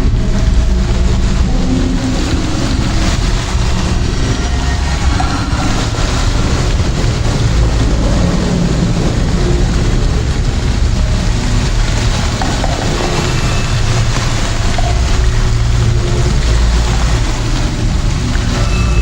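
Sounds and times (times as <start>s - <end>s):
loud low rumbling: 0.0s - 19.0s.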